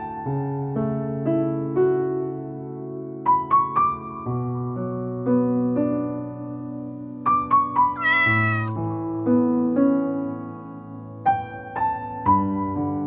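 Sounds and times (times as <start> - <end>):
soft piano music: 0.0 - 13.0
cat meow: 8.0 - 8.8.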